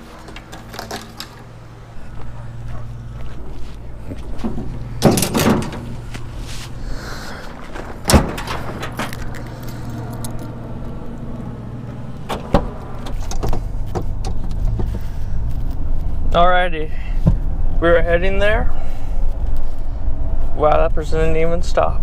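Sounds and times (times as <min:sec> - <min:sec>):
low hum of a car: 0:00.0 - 0:22.0
sharp clicks and knocks: 0:04.1 - 0:06.3, 0:12.2 - 0:15.0
car keys jangling: 0:04.2 - 0:06.4, 0:07.7 - 0:11.0.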